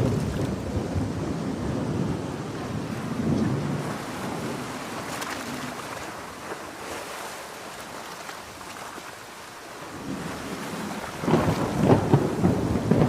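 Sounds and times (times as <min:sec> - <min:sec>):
thunder rolling: 0:00.0 - 0:05.0, 0:11.1 - 0:13.0
ocean surf: 0:00.0 - 0:13.0
rain: 0:00.0 - 0:13.0.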